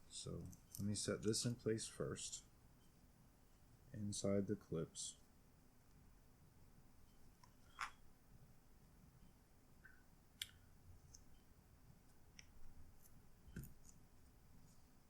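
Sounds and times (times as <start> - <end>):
faint clicks and taps: 11.9 - 14.0.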